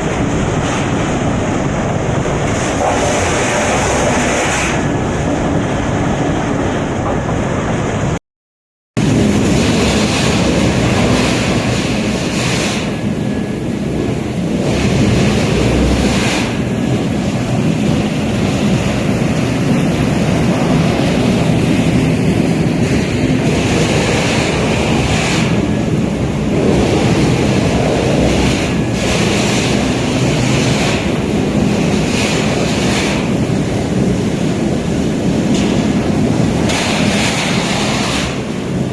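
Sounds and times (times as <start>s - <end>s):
wood chipper running: 9.0s - 38.9s.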